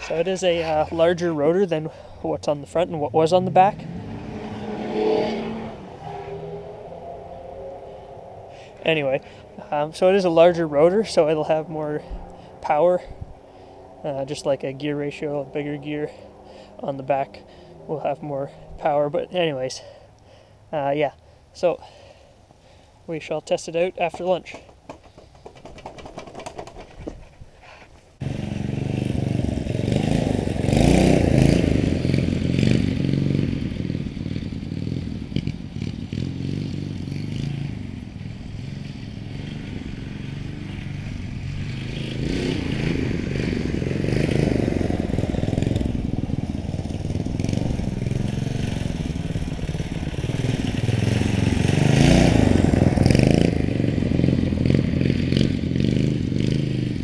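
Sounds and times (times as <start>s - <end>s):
mini bike engine revving: 0.0s - 12.7s, 28.2s - 57.0s
chassis rattling: 24.1s - 27.4s.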